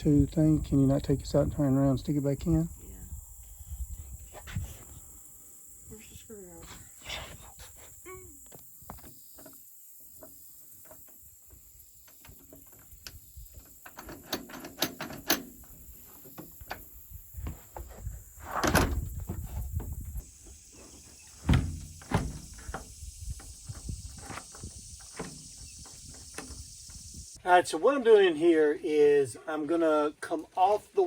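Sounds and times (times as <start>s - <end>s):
small metal clicks and rattles: 12.0s - 15.8s.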